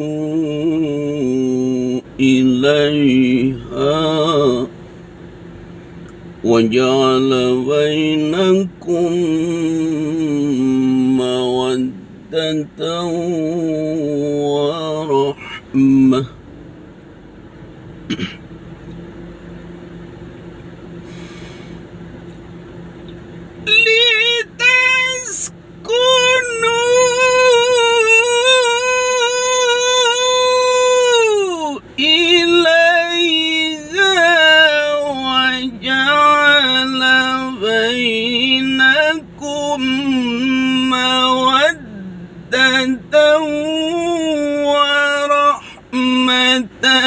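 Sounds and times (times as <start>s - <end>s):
man reciting melodically: 0.0s - 4.8s, 6.3s - 16.4s, 23.6s - 47.0s
low mechanical hum: 0.0s - 47.0s
brief hiss: 20.9s - 22.4s.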